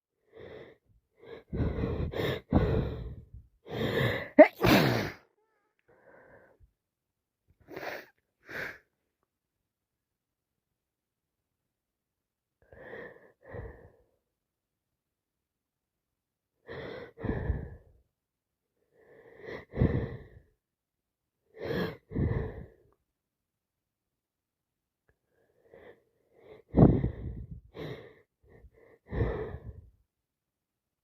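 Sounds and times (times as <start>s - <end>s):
woman sneezing: 4.4s - 5.2s.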